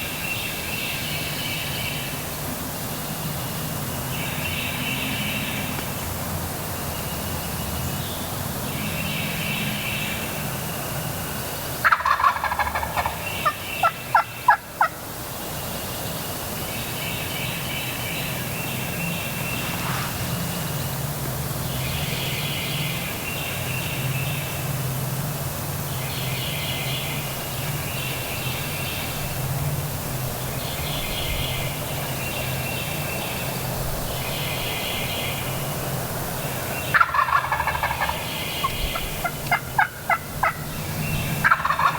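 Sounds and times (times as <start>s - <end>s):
turkey gobbling: 11.8s - 15.0s, 36.9s - 40.8s, 41.4s - 41.9s
low wind rumble: 12.4s - 41.9s.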